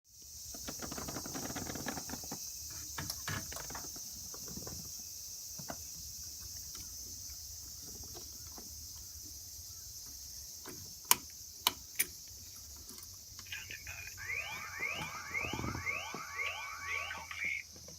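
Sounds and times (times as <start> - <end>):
insects chirring: 0.1 - 17.9
small clicks and rustles: 0.4 - 9.4.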